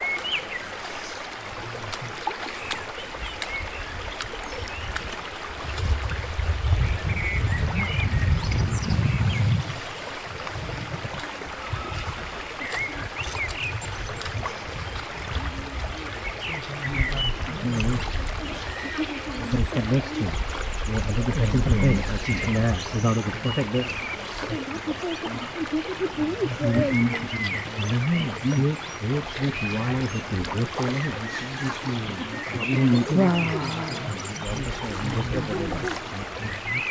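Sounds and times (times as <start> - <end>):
river water rushing: 0.0 - 36.9.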